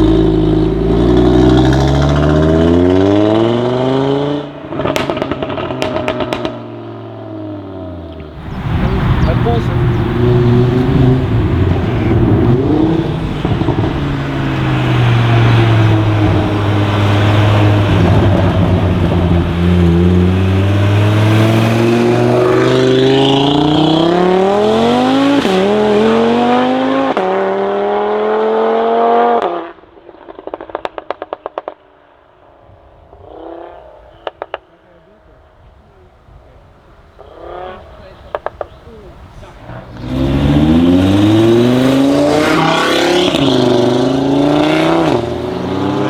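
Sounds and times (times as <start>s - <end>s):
car engine accelerating hard: 0.0s - 29.8s, 37.2s - 46.0s
exhaust crackles and pops: 4.5s - 23.8s, 29.4s - 35.5s, 37.0s - 41.9s.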